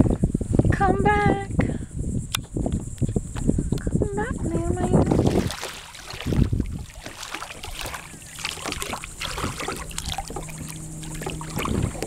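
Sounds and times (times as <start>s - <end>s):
water lapping and trickling: 2.4s - 12.0s
knocks and scrapes on kayak hull: 6.2s - 12.0s.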